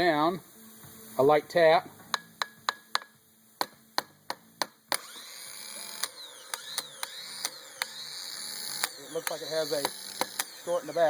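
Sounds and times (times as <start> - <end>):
starter motor whirring: 4.9 - 11.0.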